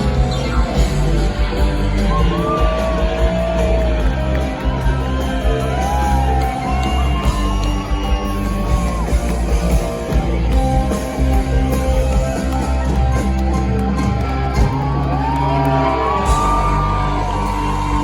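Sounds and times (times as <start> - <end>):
crowd shouting: 0.0 - 10.4, 13.8 - 18.0
live rock band playing: 0.0 - 18.0.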